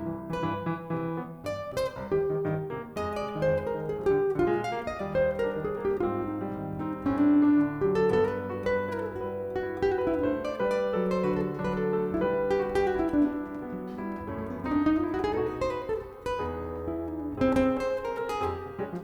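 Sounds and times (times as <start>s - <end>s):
acoustic guitar jazz: 0.0s - 19.0s
piano chords: 0.0s - 19.0s.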